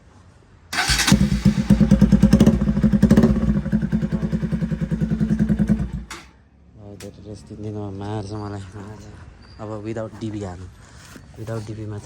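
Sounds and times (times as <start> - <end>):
motorcycle engine starting and idling: 0.7 - 6.4.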